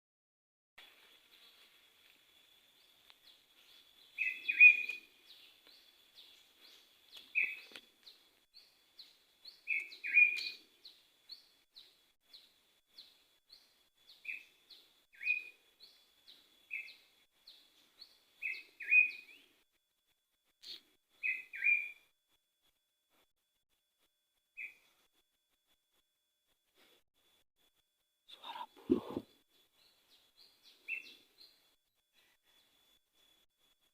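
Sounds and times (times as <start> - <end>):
bird downward-sliding calls: 28.4 - 29.2.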